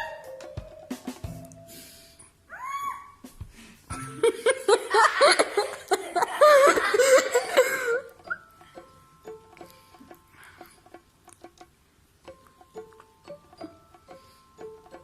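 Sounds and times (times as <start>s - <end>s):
high wavering laughter: 4.1s - 8.2s.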